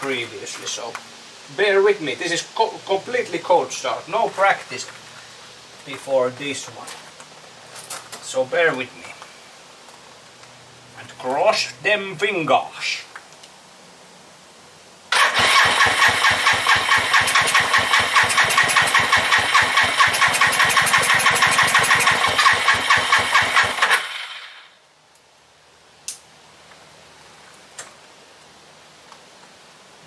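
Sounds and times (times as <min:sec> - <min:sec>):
engine cranking on starter: 0:15.1 - 0:24.7.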